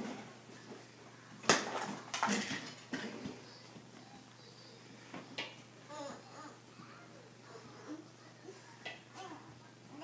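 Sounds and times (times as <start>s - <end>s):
baby babbling: 5.9s - 8.0s.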